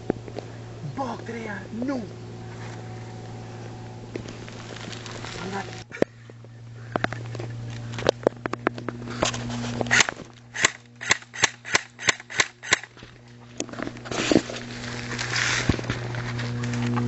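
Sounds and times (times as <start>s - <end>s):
airsoft guns firing: 9.9s - 13.0s.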